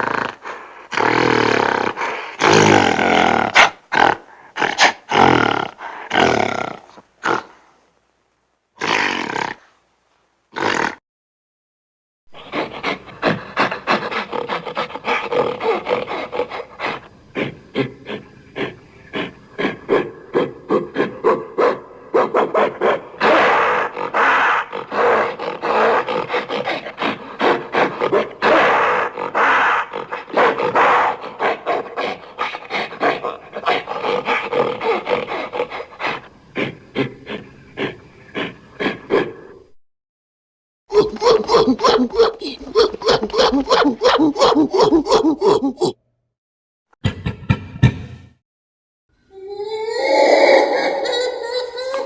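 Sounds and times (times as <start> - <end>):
rasping grunting vocal sounds: 0.0 - 7.5, 12.3 - 39.7.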